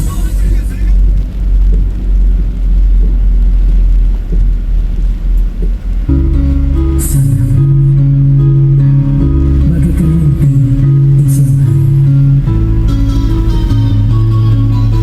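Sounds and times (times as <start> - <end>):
bass-heavy music: 0.0 - 15.0
guitar music with sustained notes: 6.1 - 15.0.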